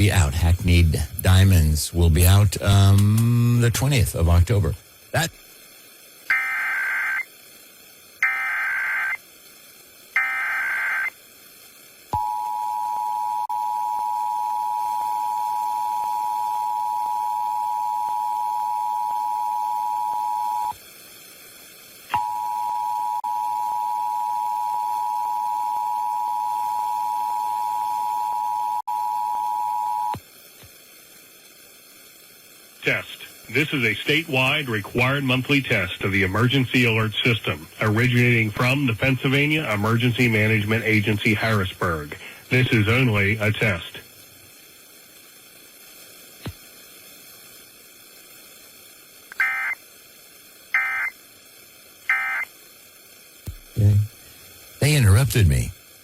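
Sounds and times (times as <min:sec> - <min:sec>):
digital data tone bursts: 0:06.3 - 0:07.4, 0:08.2 - 0:09.2, 0:10.1 - 0:11.2, 0:49.3 - 0:49.8, 0:50.7 - 0:51.2, 0:52.1 - 0:52.5.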